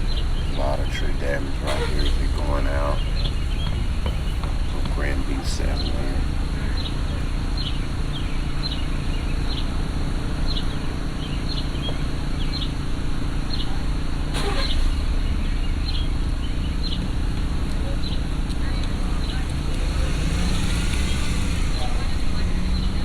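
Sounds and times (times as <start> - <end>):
vehicle rumbling: 0.0 - 23.0.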